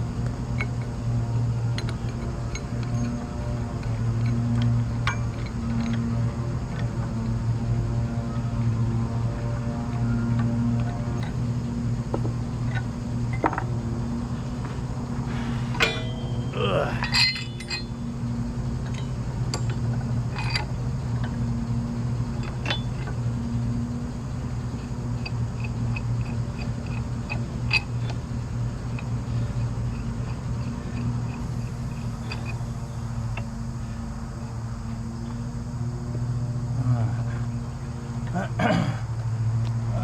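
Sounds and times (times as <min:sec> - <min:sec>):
low machine hum: 0:00.0 - 0:40.0
metallic clicks of tools: 0:28.9 - 0:32.7.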